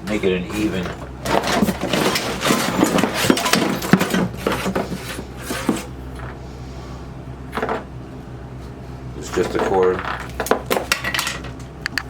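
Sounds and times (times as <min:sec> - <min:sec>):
knocks and rubbing of machine parts: 0:00.0 - 0:06.4.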